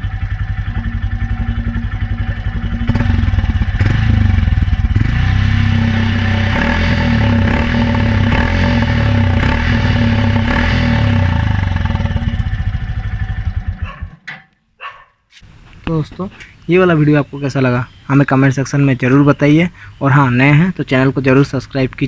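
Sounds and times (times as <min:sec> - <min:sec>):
motorcycle engine idling fast: 0:00.0 - 0:14.1.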